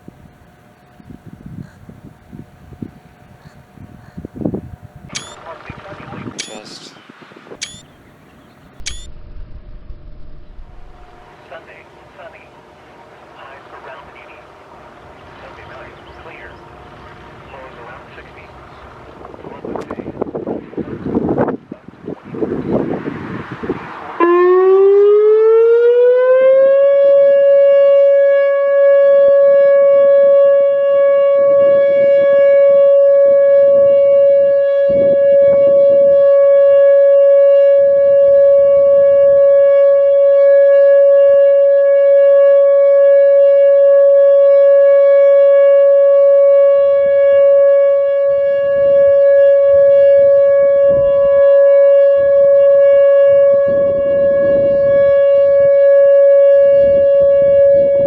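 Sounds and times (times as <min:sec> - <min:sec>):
wind buffeting microphone: 0:00.0 - 0:11.3, 0:18.8 - 0:24.2, 0:31.4 - 0:37.0, 0:46.8 - 0:58.0
electronic warning siren: 0:00.0 - 0:21.2, 0:22.2 - 0:58.0.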